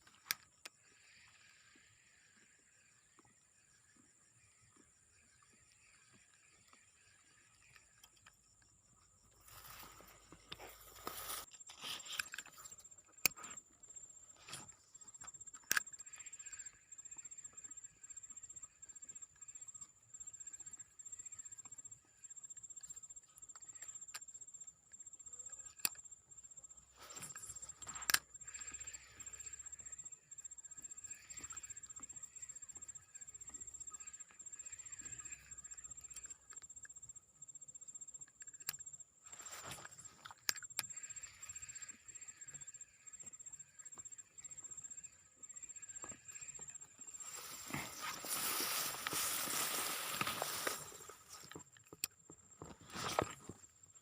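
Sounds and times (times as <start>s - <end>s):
faint wavering chirring: 0.0s - 54.0s
high-pitched whine: 41.0s - 51.6s.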